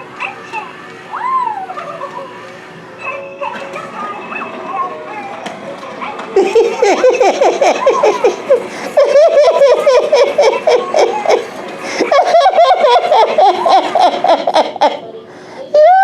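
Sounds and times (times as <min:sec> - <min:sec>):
high-pitched laughter: 0:06.4 - 0:15.1.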